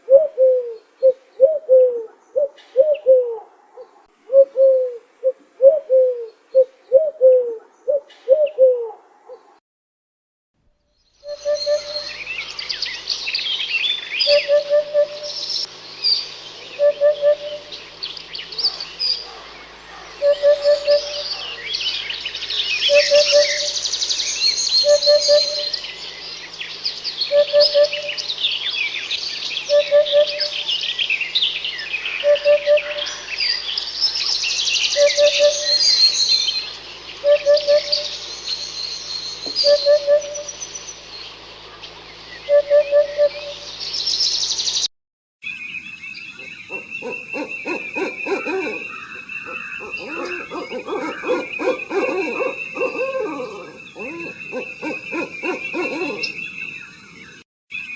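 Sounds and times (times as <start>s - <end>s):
birds chirping and singing: 10.9s - 57.9s
short hooting bird call: 22.8s - 23.8s.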